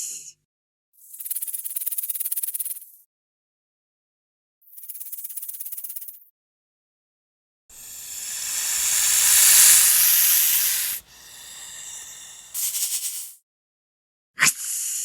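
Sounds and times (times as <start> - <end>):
snake hissing: 7.8 - 13.3.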